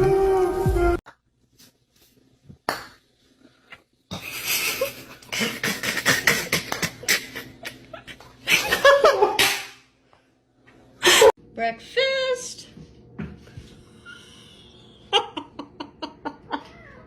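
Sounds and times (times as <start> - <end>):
person laughing: 4.2 - 9.4, 14.3 - 16.8.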